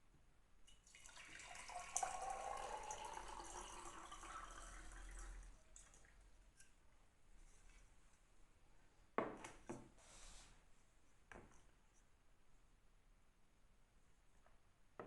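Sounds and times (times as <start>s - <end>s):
tap water filling a vessel: 0.7s - 6.8s.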